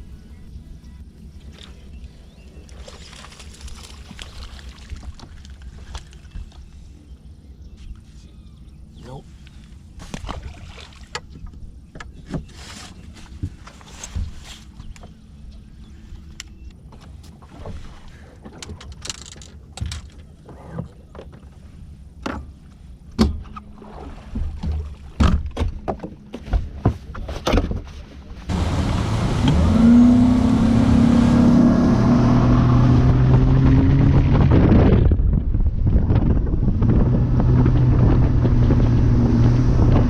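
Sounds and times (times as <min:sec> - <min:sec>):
outboard motor running at speed: 0:28.5 - 0:40.0
wind rushing over microphone: 0:28.5 - 0:40.0.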